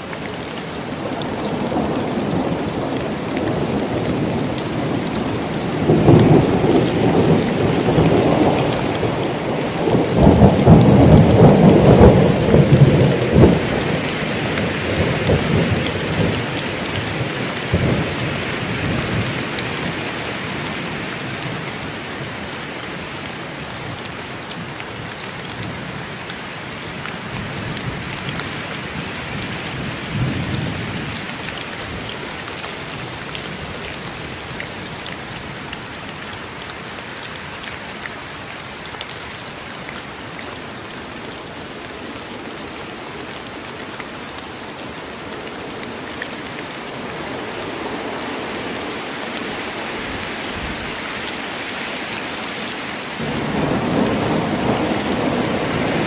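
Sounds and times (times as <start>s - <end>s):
steady rain: 0.0s - 56.0s
thunder rumble: 5.8s - 14.2s, 53.2s - 56.0s.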